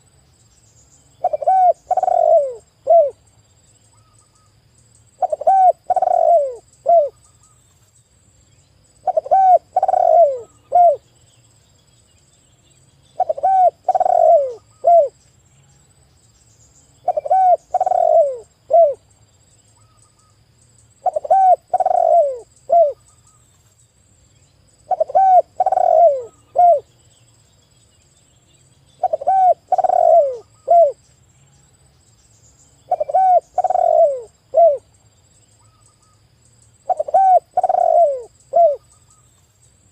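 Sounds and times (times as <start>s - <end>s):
dove cooing: 1.2s - 3.2s, 5.2s - 7.2s, 9.0s - 11.1s, 13.2s - 15.2s, 17.0s - 19.0s, 21.0s - 23.0s, 24.8s - 26.9s, 29.0s - 31.0s, 32.9s - 34.9s, 36.9s - 38.9s.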